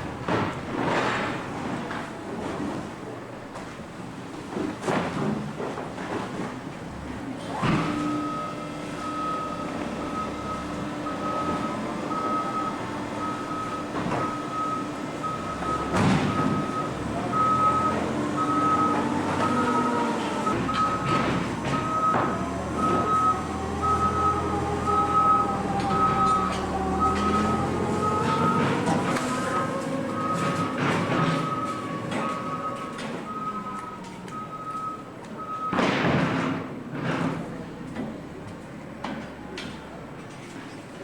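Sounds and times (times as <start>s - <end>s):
backup alarm beeping: 8.2s - 35.8s
knocks and clatters: 25.7s - 33.3s.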